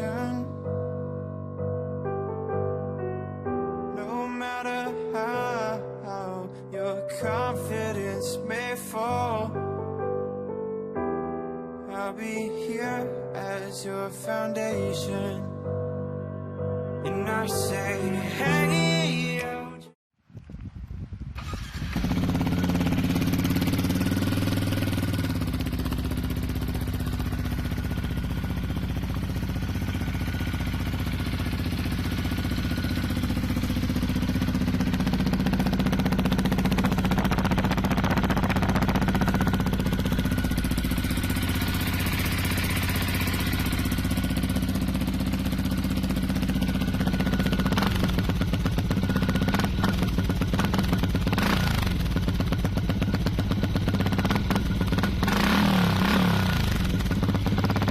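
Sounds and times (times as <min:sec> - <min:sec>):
motorcycle engine idling: 0:21.4 - 0:57.9.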